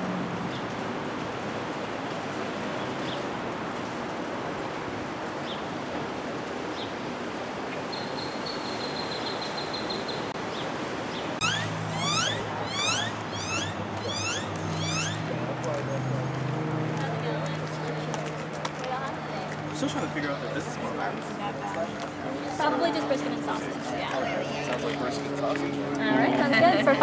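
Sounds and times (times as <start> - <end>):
outdoor noise: 0.0 - 27.0
high bird chirps: 11.4 - 15.3
rising bird whistles: 11.4 - 15.3.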